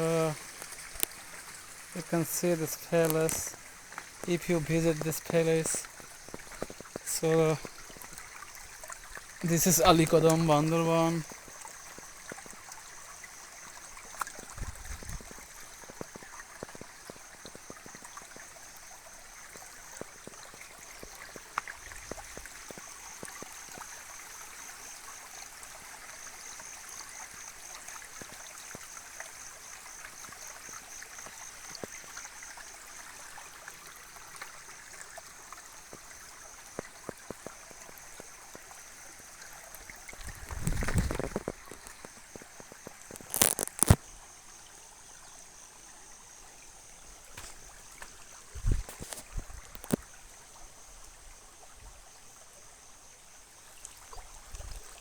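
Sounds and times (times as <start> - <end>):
stream water rushing: 0.0 - 24.5, 31.7 - 44.0.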